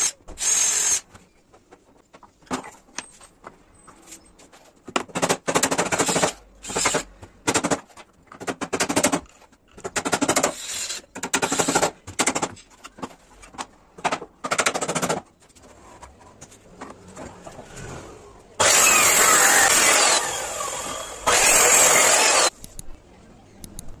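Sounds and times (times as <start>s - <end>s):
woodworking tool noise: 14.5s - 22.5s.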